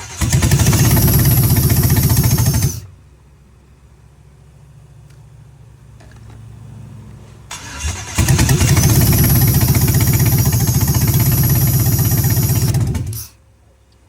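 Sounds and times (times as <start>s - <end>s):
engine running loud and rough: 0.0s - 2.9s, 7.8s - 13.3s.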